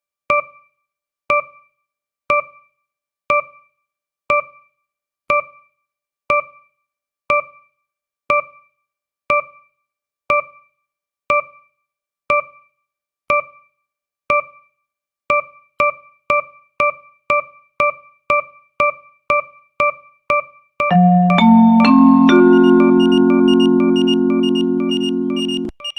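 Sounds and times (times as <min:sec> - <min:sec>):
electronic timer beep-tick: 0:00.3 - 0:00.7, 0:01.3 - 0:01.7, 0:02.3 - 0:02.7, 0:03.3 - 0:03.7, 0:04.3 - 0:04.7, 0:05.3 - 0:05.7, 0:06.3 - 0:06.7, 0:07.3 - 0:07.7, 0:08.3 - 0:08.7, 0:09.3 - 0:09.7, 0:10.3 - 0:10.7, 0:11.3 - 0:11.7, 0:12.3 - 0:12.7, 0:13.3 - 0:13.7, 0:14.3 - 0:14.7, 0:15.3 - 0:17.5, 0:19.3 - 0:25.9.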